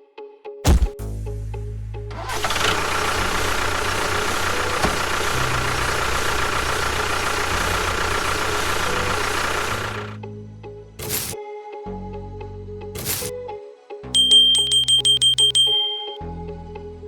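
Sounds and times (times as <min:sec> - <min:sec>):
engine running with low throb: 0:00.7 - 0:10.2, 0:11.0 - 0:11.4.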